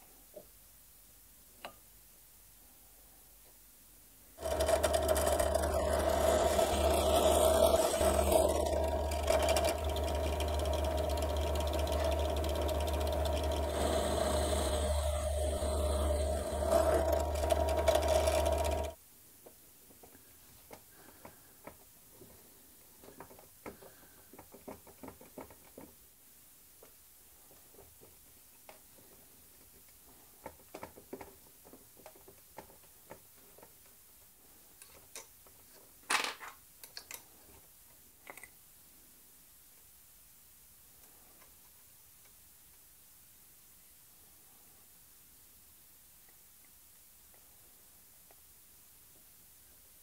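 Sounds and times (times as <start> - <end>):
power saw cutting plywood: 4.4 - 19.0.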